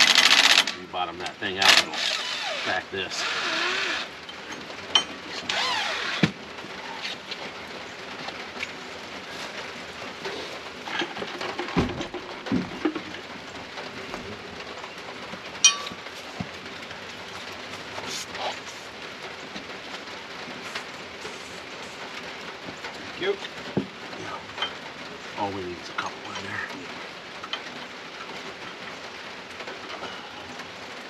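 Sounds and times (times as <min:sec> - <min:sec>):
steady rain falling: 0:00.0 - 0:31.0
metal parts knocking and clinking: 0:15.6 - 0:16.1.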